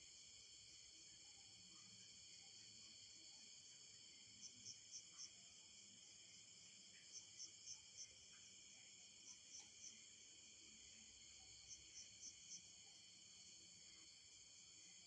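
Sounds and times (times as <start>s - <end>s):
crickets droning: 0.0s - 15.0s.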